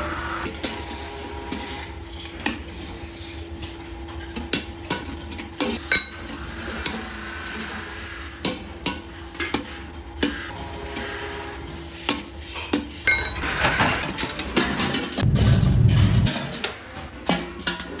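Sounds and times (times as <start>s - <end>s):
steady low hum: 15.2s - 16.5s.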